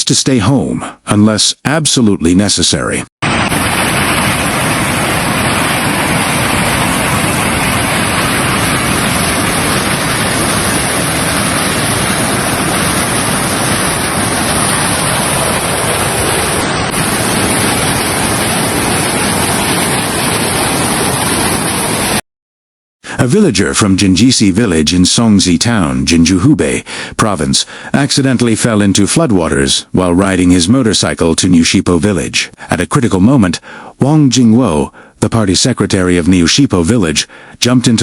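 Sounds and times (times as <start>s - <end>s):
water rushing: 3.2s - 22.2s.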